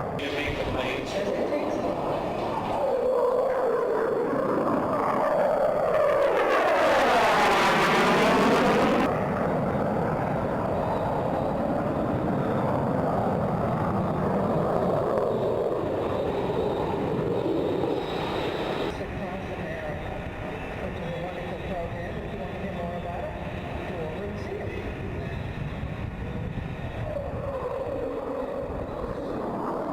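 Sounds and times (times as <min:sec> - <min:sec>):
steady jet roar: 0:00.0 - 0:19.1.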